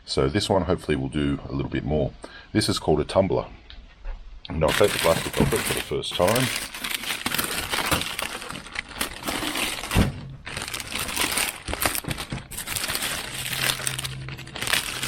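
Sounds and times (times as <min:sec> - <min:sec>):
plastic wrapping crinkling: 0:04.6 - 0:15.0.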